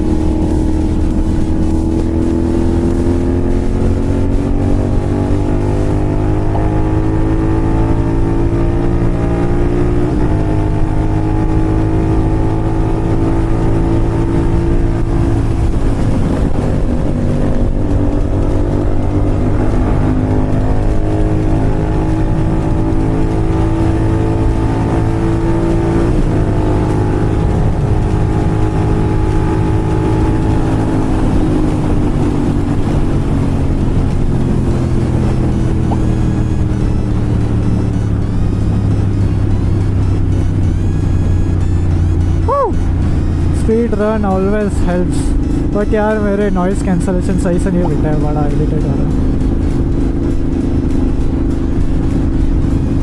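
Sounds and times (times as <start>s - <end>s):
motorcycle engine running: 0.0s - 53.0s.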